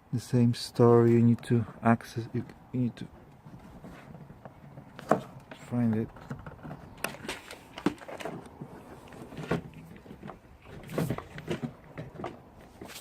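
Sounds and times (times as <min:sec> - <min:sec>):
plastic clicks and knocks: 0:04.4 - 0:08.6.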